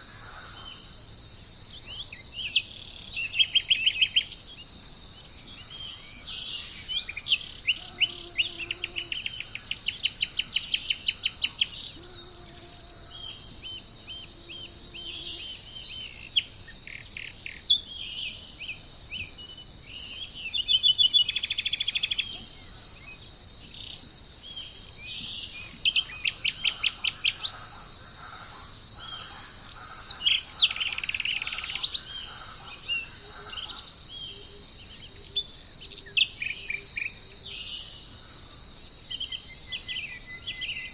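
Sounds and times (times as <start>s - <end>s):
insects droning: 0.0s - 40.9s
birds chirping and singing: 13.1s - 38.0s.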